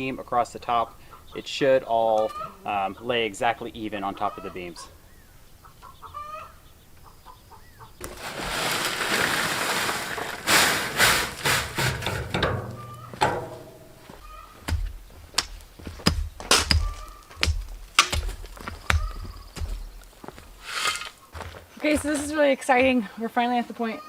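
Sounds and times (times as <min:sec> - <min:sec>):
chickens clucking: 0:00.6 - 0:08.5, 0:10.4 - 0:14.7, 0:18.7 - 0:21.0
rushing scraping noise: 0:08.0 - 0:14.0, 0:20.5 - 0:21.2
sharp knocks and thuds: 0:10.9 - 0:20.6.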